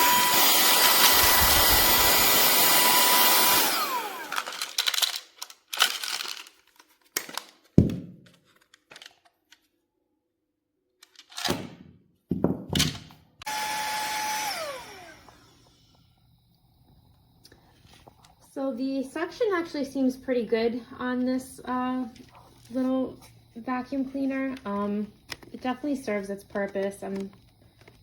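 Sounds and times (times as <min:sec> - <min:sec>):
handheld vacuum cleaner whine: 0:00.0 - 0:05.2, 0:13.4 - 0:16.4, 0:21.7 - 0:28.0.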